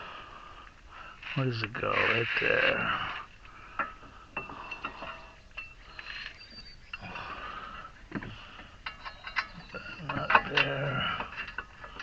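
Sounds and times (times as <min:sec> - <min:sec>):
metal parts and tools clinking: 0:03.8 - 0:07.1, 0:08.8 - 0:12.0.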